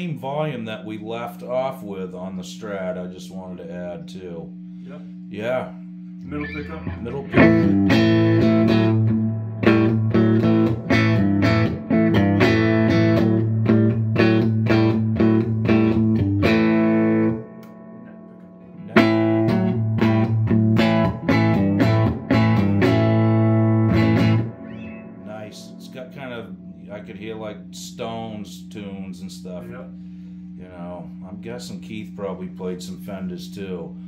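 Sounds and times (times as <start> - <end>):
electric guitar strumming chords: 5.9 - 30.4.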